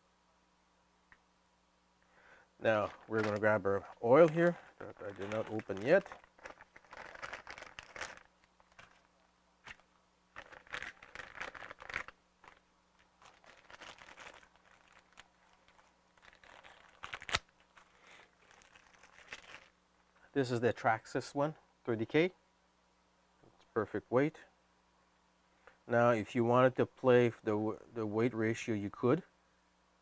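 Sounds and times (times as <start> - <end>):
plastic crinkling and tearing: 2.6 - 9.8, 10.4 - 19.7.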